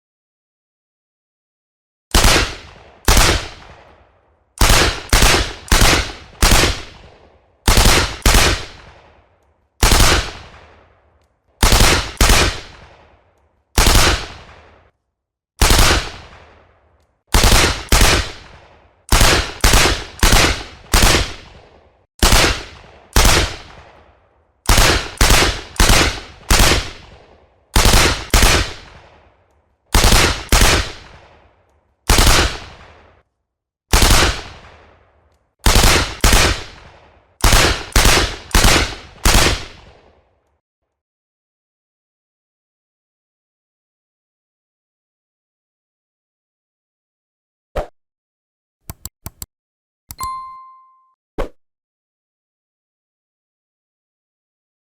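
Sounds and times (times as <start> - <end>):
machine-gun fire with echo: 2.1 - 10.9, 11.6 - 13.2, 13.8 - 14.9, 15.6 - 16.7, 17.3 - 24.1, 24.7 - 33.2, 33.9 - 34.9, 35.6 - 40.1.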